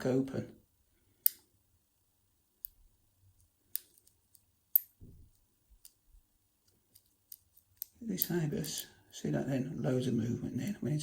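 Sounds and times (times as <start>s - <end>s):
metallic clicks of lock picking: 3.4s - 5.0s, 6.6s - 8.9s.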